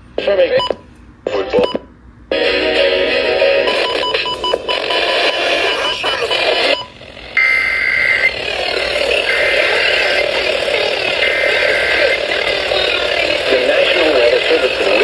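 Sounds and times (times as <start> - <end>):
radio music: 0.2 - 15.0
digital data bursts: 3.7 - 15.0.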